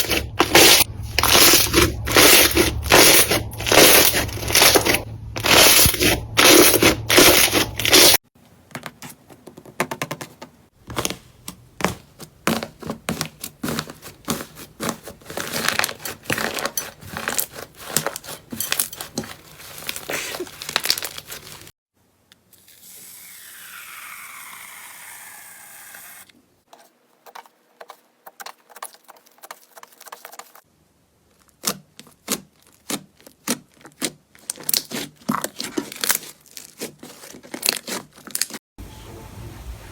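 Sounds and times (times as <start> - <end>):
slime crackling and popping: 19.6 - 21.7.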